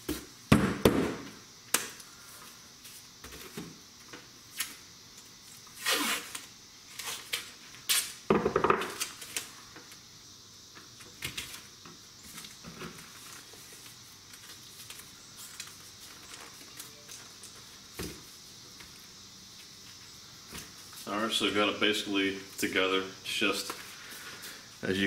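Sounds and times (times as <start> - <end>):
tape tearing: 5.6 - 8.2
duct tape pulled off roll: 5.7 - 8.2.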